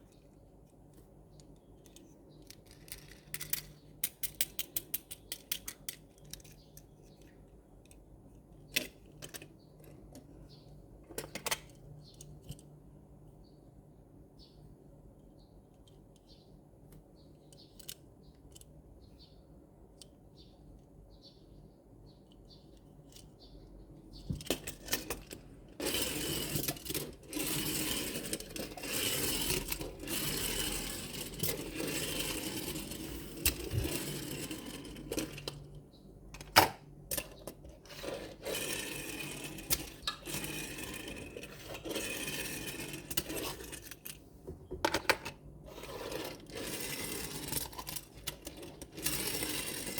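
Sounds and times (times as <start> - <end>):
toy trucks rustling and rattling: 1.8 - 6.9, 24.4 - 35.7, 37.2 - 44.2, 44.9 - 49.9.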